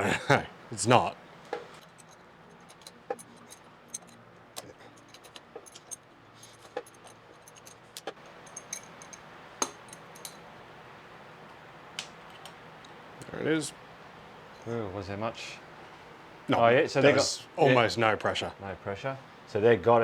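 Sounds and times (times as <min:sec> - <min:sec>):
hand tools clinking on metal: 0:01.8 - 0:10.5.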